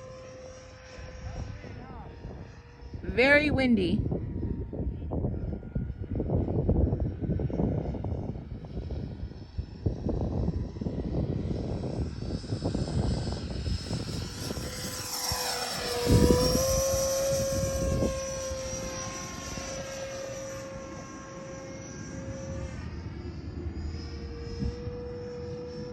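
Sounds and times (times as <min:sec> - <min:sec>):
wind buffeting microphone: 0:01.3 - 0:25.9
electric ducted fan whining: 0:12.6 - 0:25.9.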